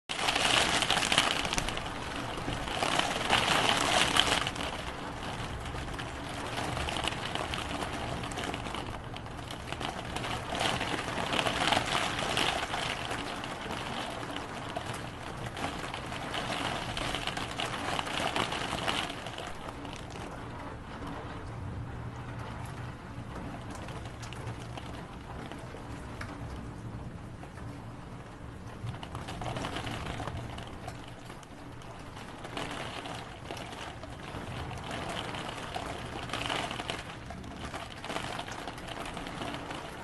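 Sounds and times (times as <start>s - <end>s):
rain falling: 0.0s - 40.0s.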